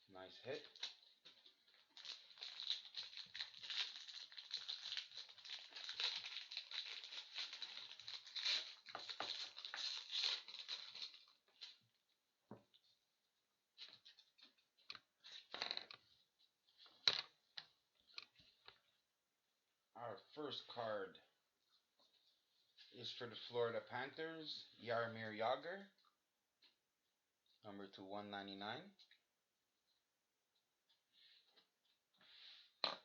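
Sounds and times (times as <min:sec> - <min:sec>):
plastic wrapper crinkling and tearing: 0:00.7 - 0:11.8.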